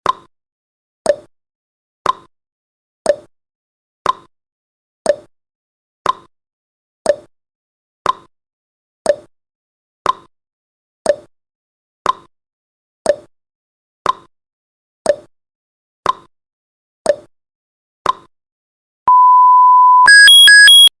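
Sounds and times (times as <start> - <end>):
high alarm beeps: 19.1 - 20.9
steady beep: 19.1 - 20.9.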